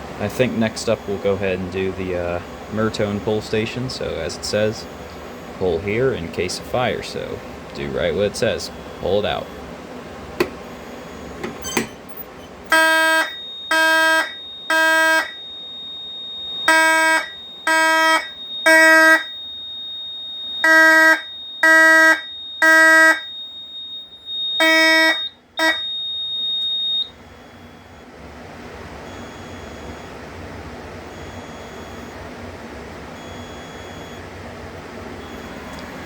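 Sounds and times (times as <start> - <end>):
fire alarm horn blasts: 0.2 - 9.7, 10.6 - 28.1, 29.0 - 30.3
steady high-pitched tone: 0.2 - 9.7.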